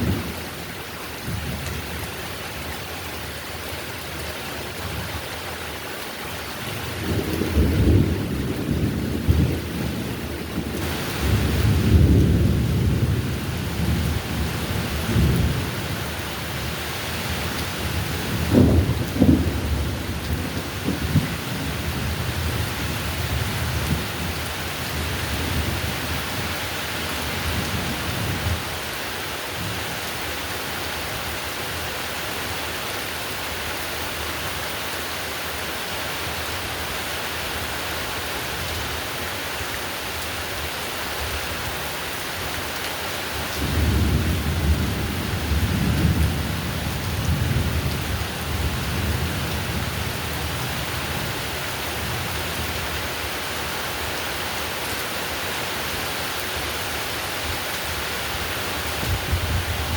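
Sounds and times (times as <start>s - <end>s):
heavy rain: 0.0s - 59.9s
thunder rumbling: 7.0s - 26.5s, 59.0s - 59.9s.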